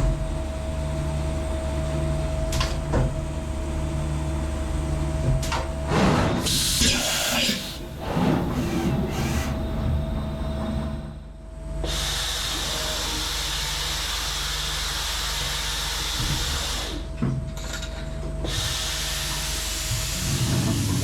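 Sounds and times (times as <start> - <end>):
machine rumble: 0.0 - 11.8
low machine hum: 0.0 - 11.9.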